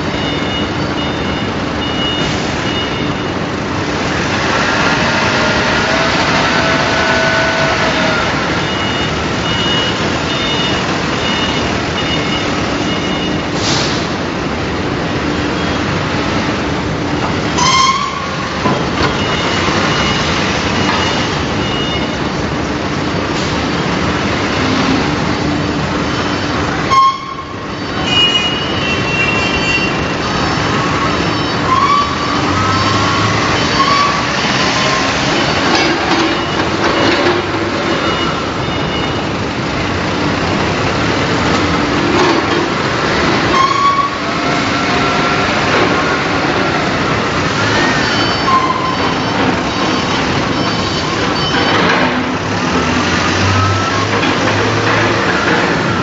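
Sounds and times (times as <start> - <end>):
industrial machinery roar: 0.0 - 56.0
high metallic squealing: 4.4 - 9.6, 17.5 - 18.6, 26.3 - 37.1, 43.4 - 51.9.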